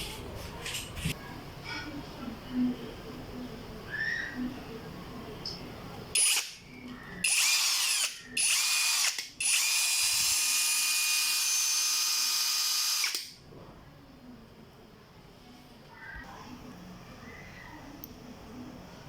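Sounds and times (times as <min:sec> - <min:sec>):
cordless drill motor whining: 0:07.2 - 0:13.2.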